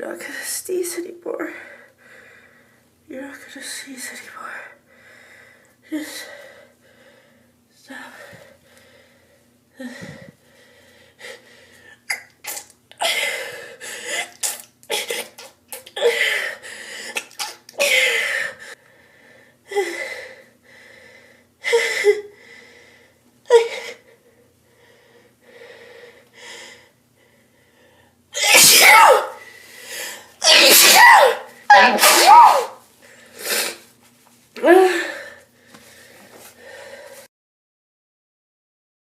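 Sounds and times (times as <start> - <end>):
girl sneezing: 17.1 - 18.3, 28.4 - 29.4, 30.4 - 32.8.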